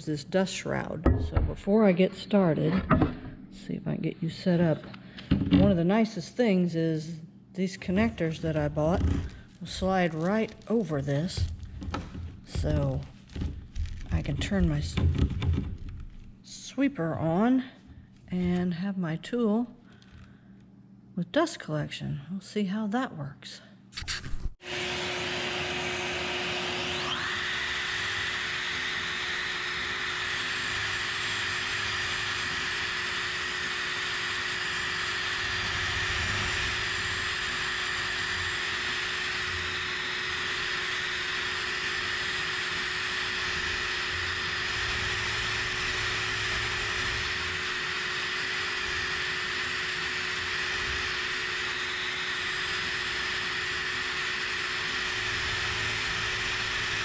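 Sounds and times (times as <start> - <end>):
shop vacuum running: 0.0 - 16.4, 24.6 - 57.0
electric sander whining: 7.8 - 16.2, 24.6 - 57.0.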